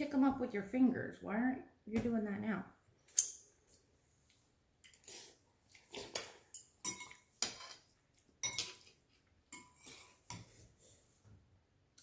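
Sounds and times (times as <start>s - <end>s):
utensils clinking on dishes: 6.1s - 10.5s.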